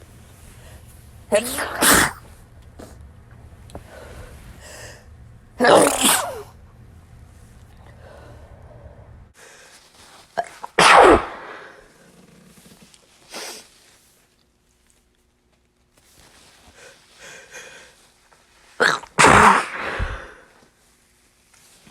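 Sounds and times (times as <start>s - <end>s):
quiet breathing: 0.0s - 1.4s, 2.2s - 5.5s, 7.2s - 10.4s, 16.2s - 18.8s
person sneezing: 1.3s - 2.9s, 5.6s - 6.5s, 10.4s - 11.8s, 18.8s - 20.5s.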